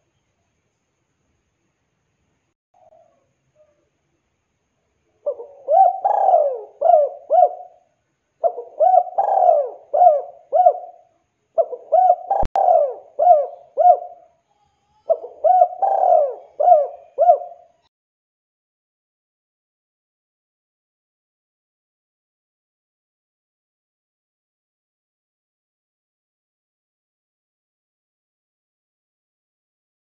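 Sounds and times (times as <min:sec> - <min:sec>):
dove cooing: 0:05.2 - 0:07.8, 0:08.4 - 0:14.4, 0:15.0 - 0:17.8.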